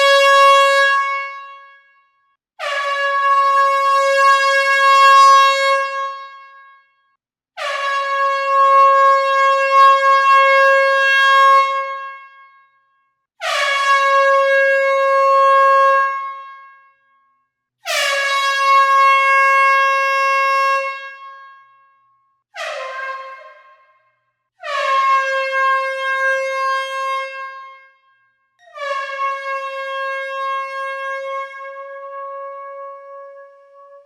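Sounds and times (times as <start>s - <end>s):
air horn blasts: 22.6s - 24.0s, 24.6s - 28.0s, 28.6s - 34.0s.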